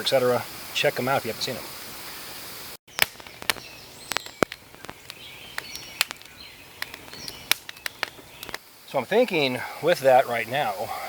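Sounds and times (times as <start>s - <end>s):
steady hiss: 0.0s - 11.0s
campfire crackling and popping: 1.8s - 9.6s.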